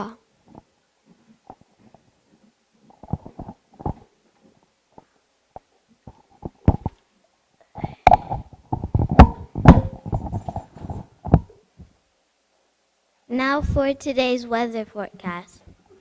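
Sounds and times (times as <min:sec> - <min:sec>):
irregular knocks and bumps: 0:07.8 - 0:11.9.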